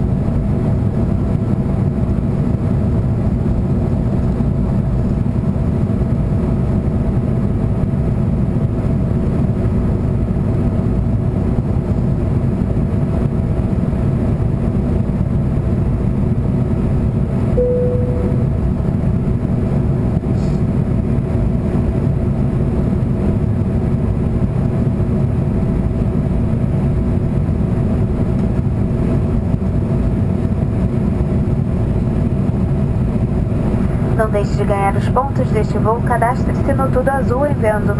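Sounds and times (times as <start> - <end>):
airliner cabin engine noise: 0.0 - 37.9
short single tone: 17.6 - 18.6.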